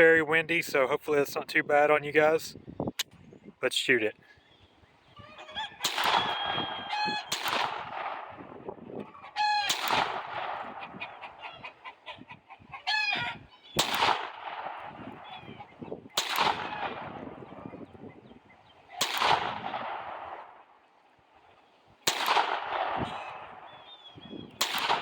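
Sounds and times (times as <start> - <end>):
wind noise: 0.0 - 3.8, 5.0 - 20.6, 21.9 - 25.0
chickens squawking: 5.1 - 7.6, 9.0 - 14.1, 14.9 - 19.1
pistol shots: 5.8 - 8.6, 9.6 - 10.8, 13.8 - 15.3, 16.1 - 17.6, 19.0 - 20.6, 22.0 - 23.7, 24.6 - 25.0.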